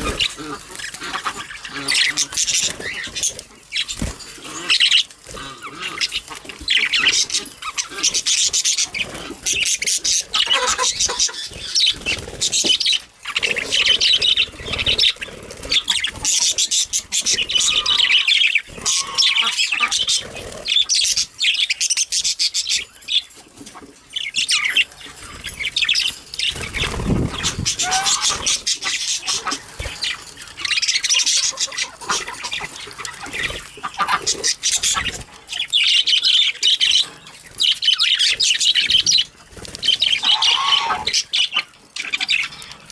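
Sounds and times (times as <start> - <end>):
budgerigars chirping and warbling: 0.0 - 42.9.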